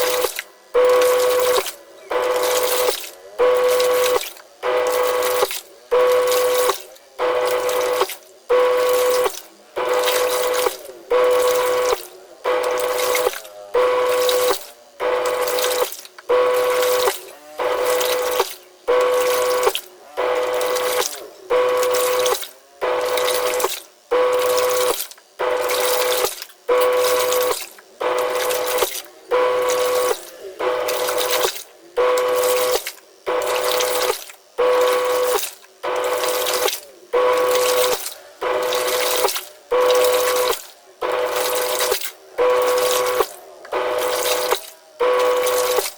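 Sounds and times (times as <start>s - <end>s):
washing machine motor whine: 0.0s - 45.9s.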